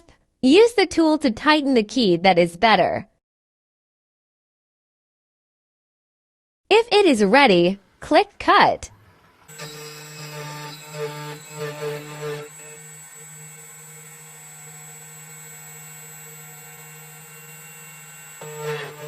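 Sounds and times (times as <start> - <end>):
machine motor humming: 9.4 - 19.0
key cutting machine milling: 9.5 - 19.0.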